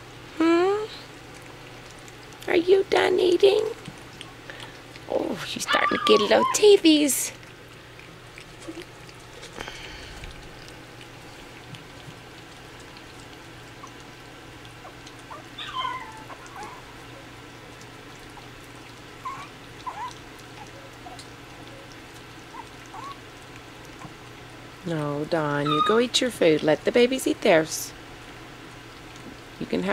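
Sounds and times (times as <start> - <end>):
puppies lapping food: 0.0 - 29.9
dog whimpers: 5.6 - 6.9, 14.8 - 17.3, 19.2 - 21.9, 22.5 - 23.3, 25.5 - 26.1.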